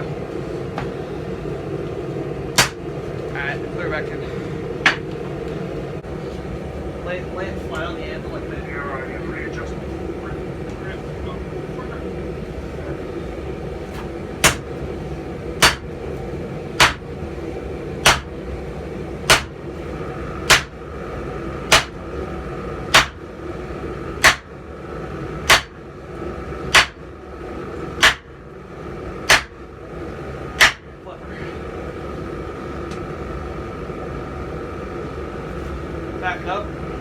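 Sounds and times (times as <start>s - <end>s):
steady background roar: 0.0s - 37.0s
hammer striking hot steel: 2.5s - 2.8s, 4.8s - 5.1s, 14.4s - 14.7s, 15.6s - 16.0s, 16.8s - 17.2s, 18.0s - 18.4s, 19.2s - 19.6s, 20.4s - 20.8s, 21.7s - 22.0s, 22.9s - 23.2s, 24.2s - 24.5s, 25.4s - 25.8s, 26.7s - 27.0s, 28.0s - 28.3s, 29.2s - 29.6s, 30.6s - 30.9s.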